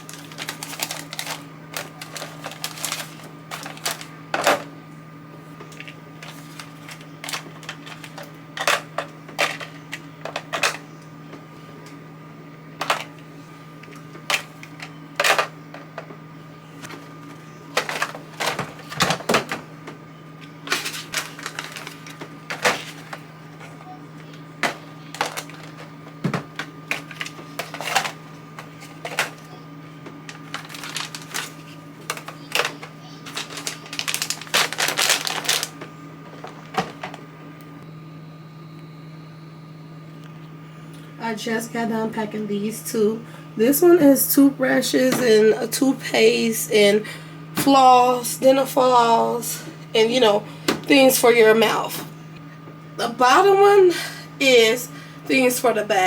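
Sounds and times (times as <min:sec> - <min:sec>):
steady hum: 0:00.0 - 0:56.0
plastic items clicking and knocking: 0:00.1 - 0:04.6, 0:05.8 - 0:10.8, 0:17.8 - 0:19.6, 0:24.6 - 0:28.2, 0:29.0 - 0:29.4, 0:30.4 - 0:35.7.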